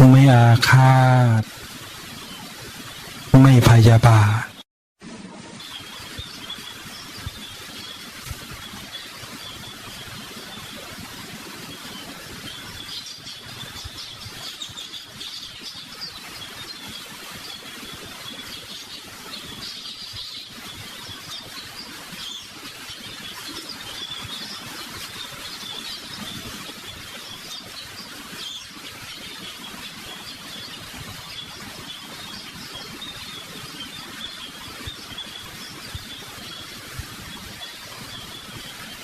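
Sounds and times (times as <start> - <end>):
birds chirping: 0.0 - 1.4, 3.4 - 4.6, 11.7 - 39.0.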